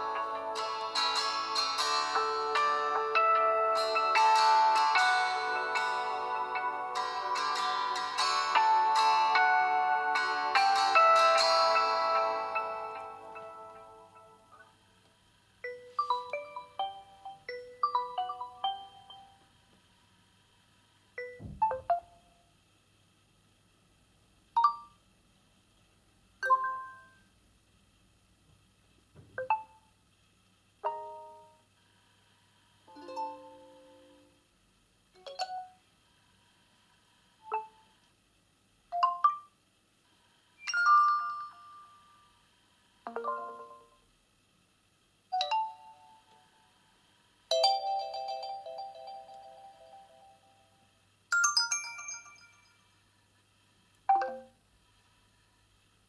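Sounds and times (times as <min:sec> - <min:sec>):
soft knock: 0:21.4 - 0:22.0
smartphone chime tones: 0:51.3 - 0:52.8.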